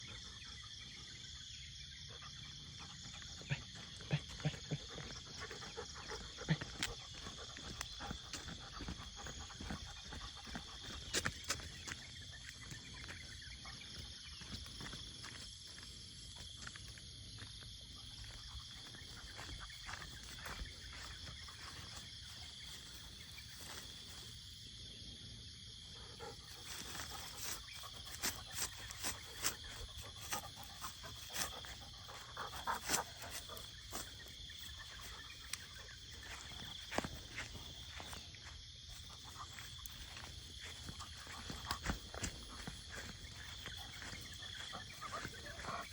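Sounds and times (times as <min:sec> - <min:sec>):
high-pitched insect drone: 0:26.5 - 0:45.9.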